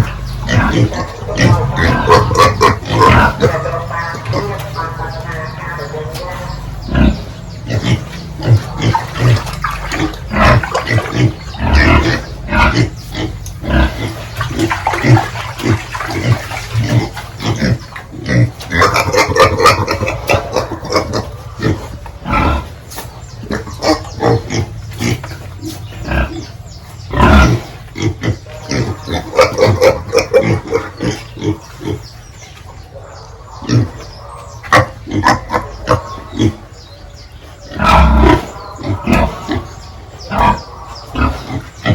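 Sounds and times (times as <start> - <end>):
pig squeals: 0.0 - 22.8, 33.0 - 36.8, 37.4 - 41.9
pigs grunting: 0.0 - 41.9.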